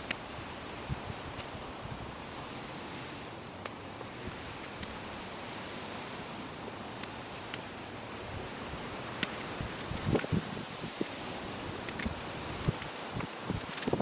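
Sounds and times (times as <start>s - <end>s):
faint high steady tone: 0.0s - 2.1s
outdoor background noise: 0.0s - 14.0s.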